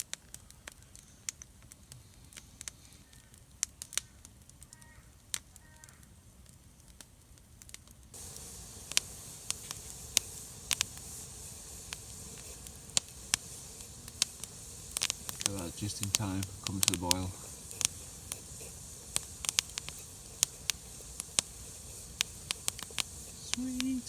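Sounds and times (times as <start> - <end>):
campfire crackling and popping: 0.0 - 24.0
steady hiss: 8.1 - 24.0.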